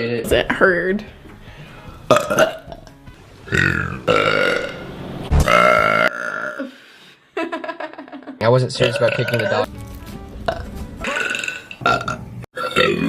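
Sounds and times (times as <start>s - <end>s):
person burping loudly: 2.1s - 4.8s, 5.4s - 6.8s, 8.8s - 9.6s, 10.5s - 13.0s.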